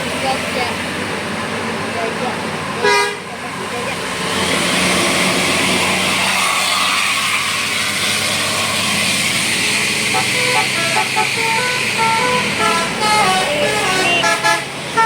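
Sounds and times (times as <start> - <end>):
bus driving past: 0.0 - 15.0
bus multi-tone horn notes: 2.8 - 3.3, 10.0 - 15.0.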